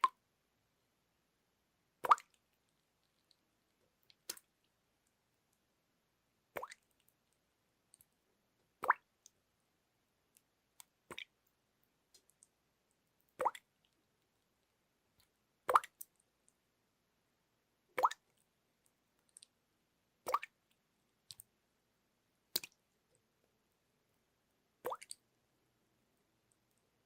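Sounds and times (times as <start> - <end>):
water dripping: 0.0 - 0.2, 2.0 - 5.7, 6.5 - 9.5, 10.3 - 16.6, 18.0 - 19.6, 20.2 - 21.6, 22.5 - 23.3, 24.8 - 25.3.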